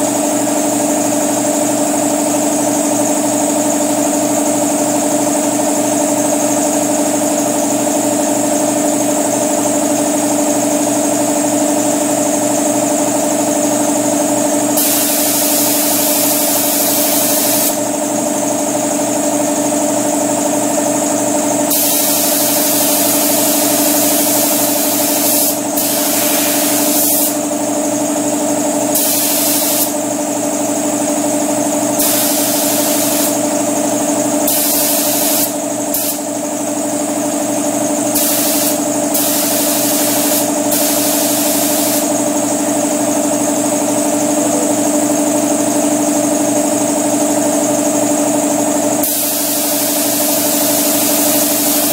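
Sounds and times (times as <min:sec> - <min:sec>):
air compressor running: 0:00.0 - 0:51.9
spray gun hissing: 0:14.8 - 0:17.8, 0:21.7 - 0:27.4, 0:29.0 - 0:30.0, 0:32.0 - 0:33.4, 0:34.5 - 0:36.2, 0:38.1 - 0:42.1, 0:49.0 - 0:51.9.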